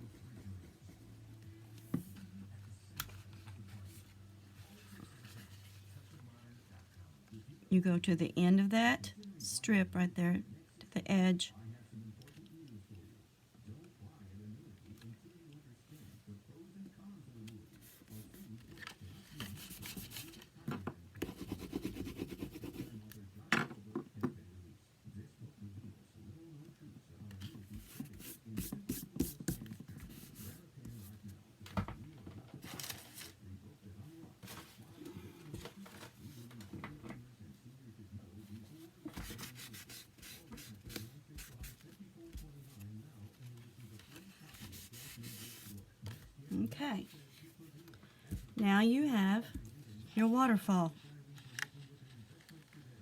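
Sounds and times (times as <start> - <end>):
paper rustling and rubbing: 17.8 - 20.5, 27.5 - 31.2, 32.6 - 33.4, 38.8 - 46.3
scratchy rubs: 21.2 - 23.0, 39.1 - 41.8, 44.3 - 45.8
paper rustling: 32.6 - 33.4, 39.1 - 42.0.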